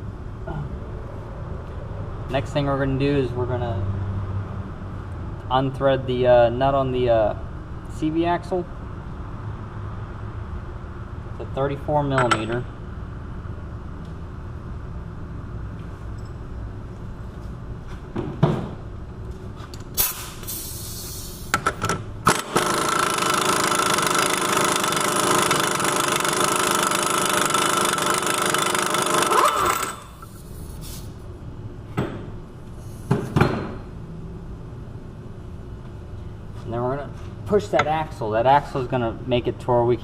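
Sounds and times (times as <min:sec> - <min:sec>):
impact wrench running: 0:21.5 - 0:30.5.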